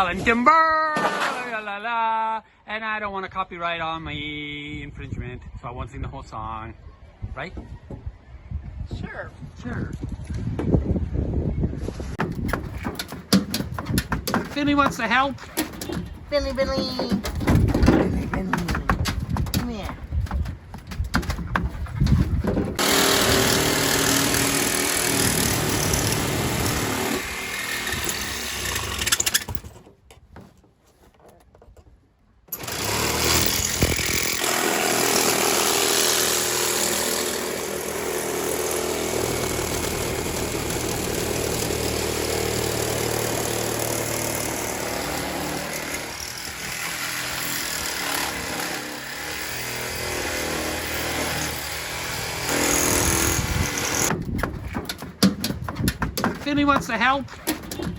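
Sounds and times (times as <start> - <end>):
power saw cutting: 22.8 - 29.5, 32.5 - 54.2.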